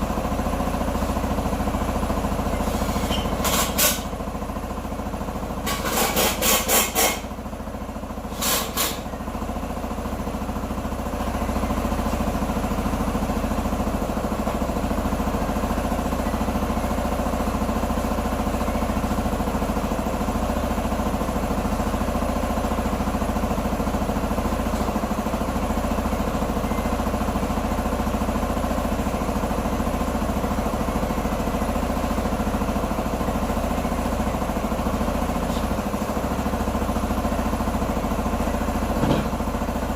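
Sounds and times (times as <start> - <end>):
scooter engine idling: 0.0 - 39.9
scooter engine starting: 2.6 - 4.2.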